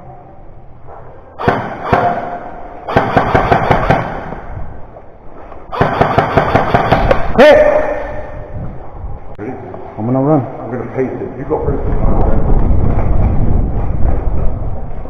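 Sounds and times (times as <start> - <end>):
airsoft rifles firing bursts: 1.4 - 4.5, 5.7 - 7.4.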